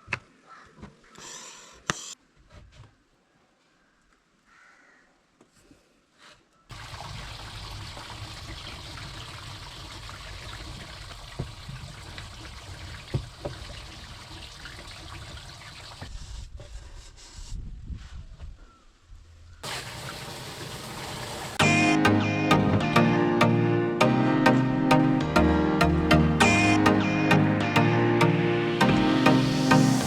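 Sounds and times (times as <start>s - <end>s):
water running and splashing: 6.7s - 16.1s, 19.6s - 21.6s.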